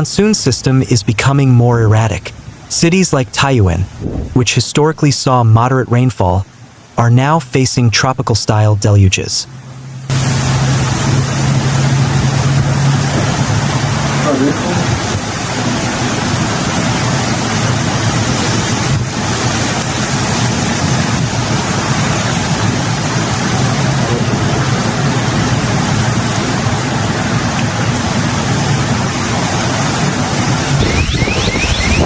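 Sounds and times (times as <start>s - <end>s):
water rushing: 0.0s - 32.0s.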